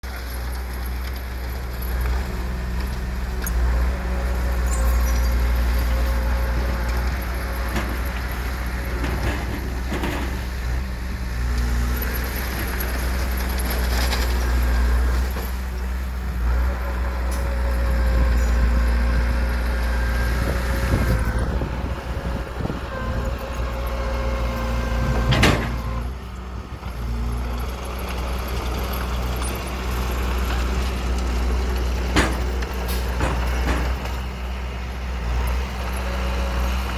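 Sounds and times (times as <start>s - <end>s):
diesel machinery engine drone: 0.0s - 36.9s
metal clanks: 25.0s - 26.0s, 32.0s - 34.2s.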